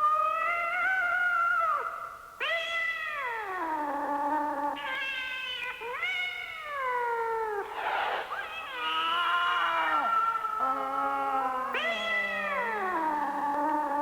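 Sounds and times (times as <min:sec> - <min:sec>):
cat yowling: 0:00.2 - 0:14.0
cat hissing: 0:07.6 - 0:13.2.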